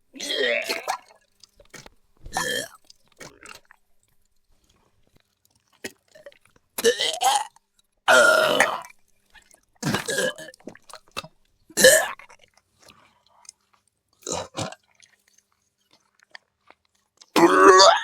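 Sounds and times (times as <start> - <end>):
alien retching heaves: 2.3 - 3.7.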